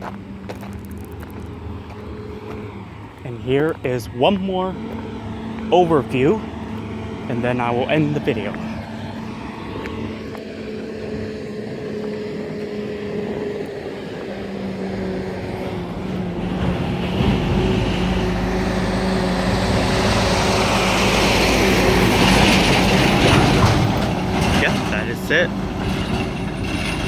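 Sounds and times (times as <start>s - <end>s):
low engine hum: 0.0s - 27.0s
vehicle approaching: 0.0s - 27.0s.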